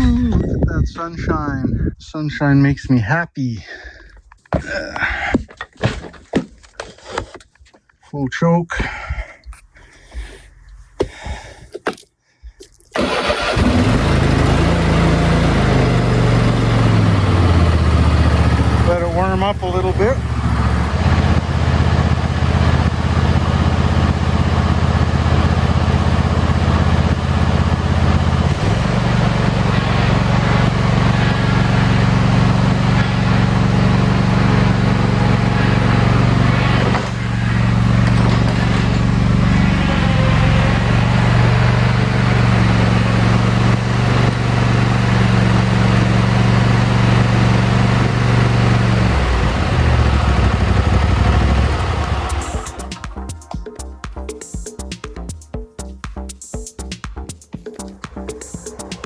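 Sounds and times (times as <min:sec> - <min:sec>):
small engine idling: 0:13.0 - 0:53.1.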